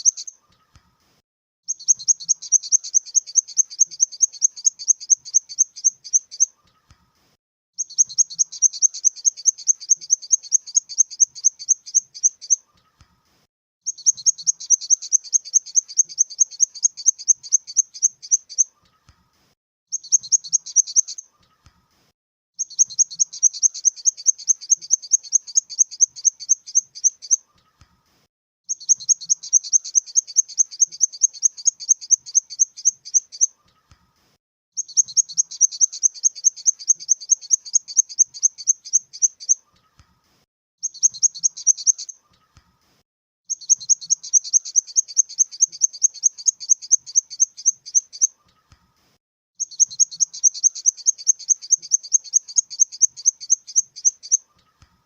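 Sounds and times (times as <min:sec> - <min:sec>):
grasshopper chirping: 0:01.7 - 0:06.5, 0:07.8 - 0:12.6, 0:13.9 - 0:18.6, 0:19.9 - 0:21.2, 0:22.6 - 0:27.4, 0:28.7 - 0:33.5, 0:34.8 - 0:39.6, 0:40.8 - 0:42.1, 0:43.5 - 0:48.3, 0:49.6 - 0:54.4.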